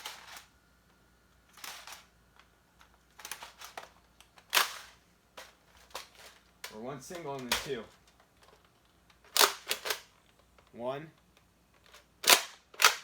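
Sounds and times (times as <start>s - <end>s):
foam blaster plastic clicks: 11.8s - 13.0s.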